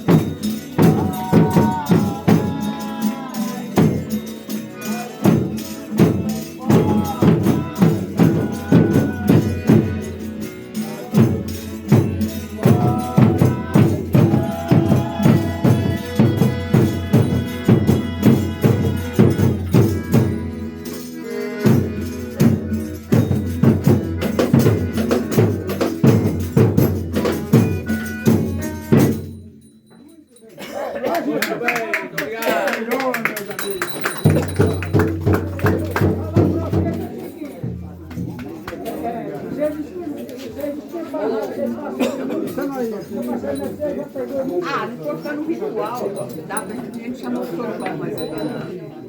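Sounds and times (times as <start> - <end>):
fast tambourine beat: 0.0 - 29.5, 32.4 - 39.7
folk music instruments: 0.0 - 31.4, 32.4 - 49.0.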